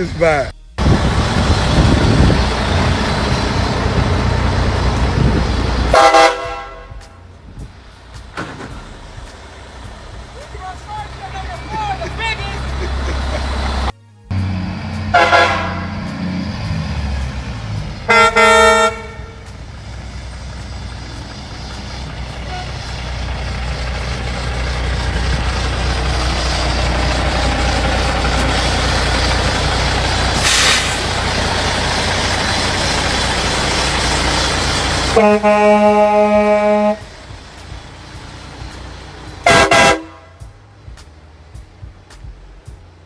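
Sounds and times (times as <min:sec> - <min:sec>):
diesel engine rumbling: 0:00.0 - 0:43.0
truck air horn blasts: 0:05.3 - 0:07.3, 0:14.4 - 0:16.4, 0:18.1 - 0:19.6, 0:21.1 - 0:23.3, 0:30.3 - 0:31.1, 0:35.1 - 0:37.2, 0:39.4 - 0:40.5
air hiss: 0:30.2 - 0:31.3.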